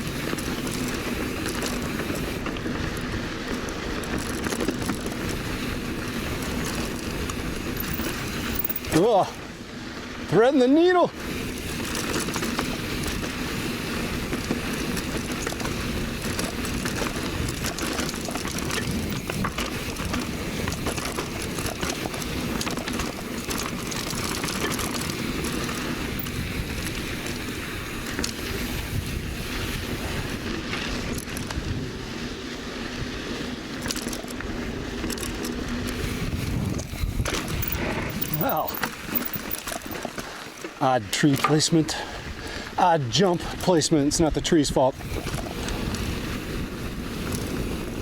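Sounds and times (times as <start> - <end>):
bike rattles and clicks: 0.0 - 48.0
bike tyres rushing on dirt: 0.0 - 48.0
wind: 0.0 - 48.0.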